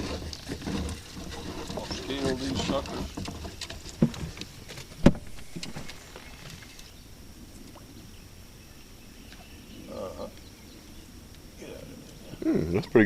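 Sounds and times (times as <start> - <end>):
sharp knocks in a boat: 0.0 - 6.0.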